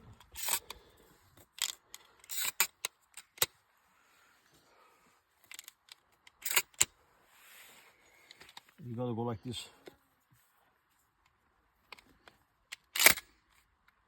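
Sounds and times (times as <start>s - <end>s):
handling clicks and rustles: 4.4s - 7.0s, 8.0s - 8.9s, 9.5s - 14.0s.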